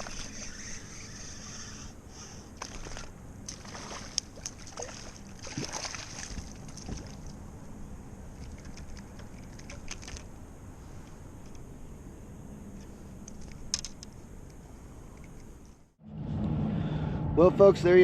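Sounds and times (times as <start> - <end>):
water sloshing against kayak: 2.6 - 7.4.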